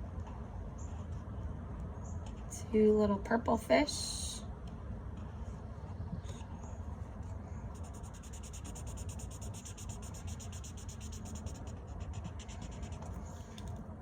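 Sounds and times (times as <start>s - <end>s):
marker scribbling on paper: 7.7s - 13.6s.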